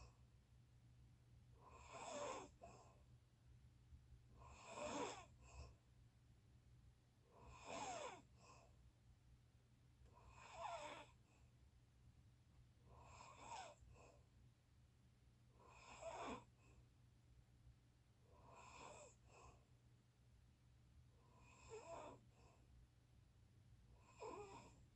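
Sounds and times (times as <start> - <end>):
person snoring with wheezy whistle: 1.8 - 2.5, 7.5 - 8.2.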